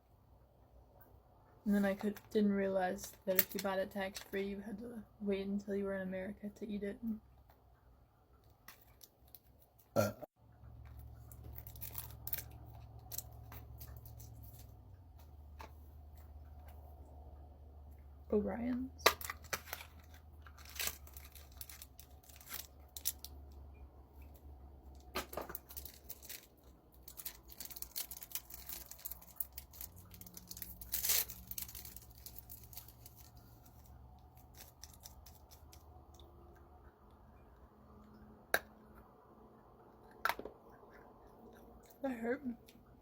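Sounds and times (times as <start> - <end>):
packaging rustling and tearing: 11.3 - 14.8, 19.0 - 23.4, 25.0 - 35.8.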